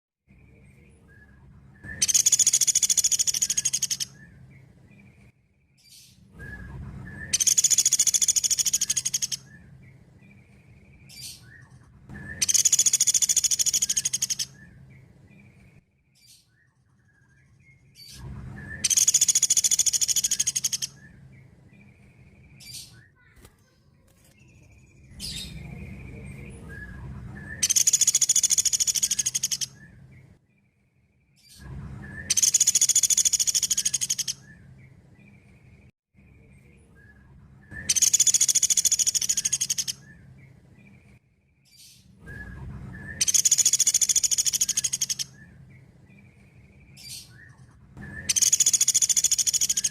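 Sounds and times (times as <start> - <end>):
woodpecker high-pitched trill: 1.8 - 4.4, 7.1 - 9.7, 11.1 - 14.8, 18.6 - 21.2, 27.4 - 29.9, 32.1 - 34.6, 37.7 - 40.2, 42.9 - 45.5, 47.0 - 49.9.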